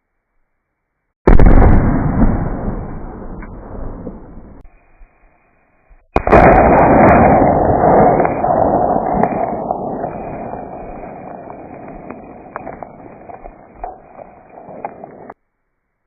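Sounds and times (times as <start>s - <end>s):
large explosion blast: 1.3s - 4.7s, 6.2s - 15.4s.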